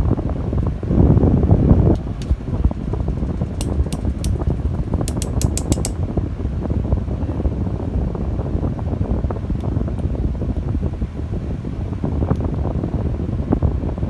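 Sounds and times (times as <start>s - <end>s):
fan-like rumbling: 0.0s - 14.0s
small sharp clicks: 3.3s - 6.0s.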